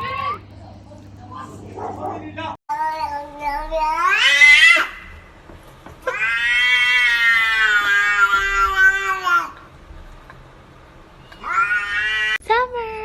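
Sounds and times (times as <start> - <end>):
cat yowling: 0.0 - 0.4, 3.8 - 5.1, 6.0 - 9.6, 11.4 - 12.4.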